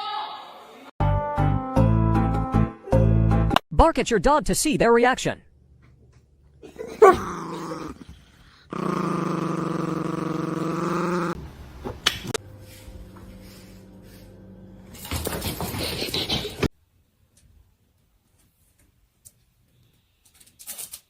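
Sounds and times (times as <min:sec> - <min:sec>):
dog yelping: 0:07.0 - 0:08.0
dog growling: 0:07.0 - 0:11.4.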